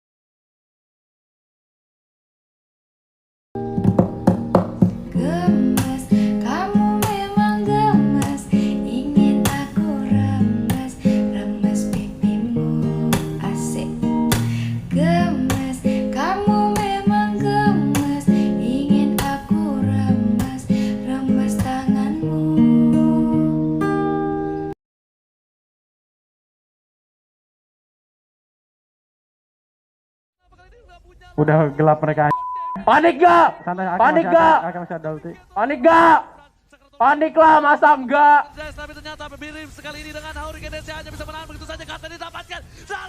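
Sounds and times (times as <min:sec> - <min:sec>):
strummed acoustic guitar: 0:03.6 - 0:24.7.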